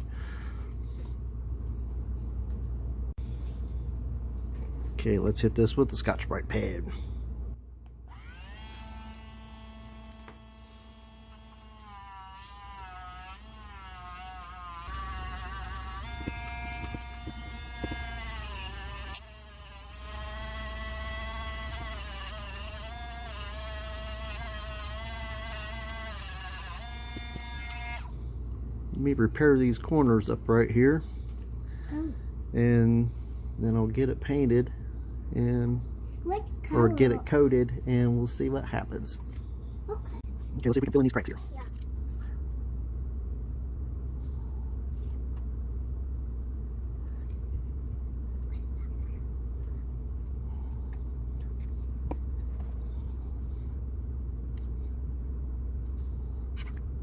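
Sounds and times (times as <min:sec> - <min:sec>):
low background rumble: 0:00.0 - 0:57.0
rotary tool whining on metal: 0:08.1 - 0:28.2.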